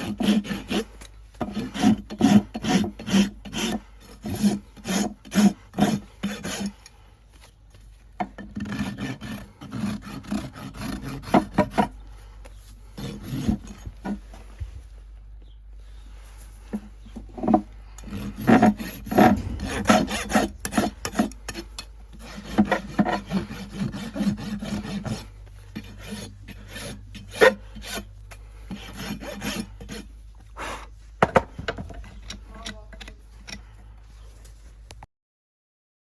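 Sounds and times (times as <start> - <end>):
rasp scraping hoof: 12.8 - 14.6, 16.2 - 34.6.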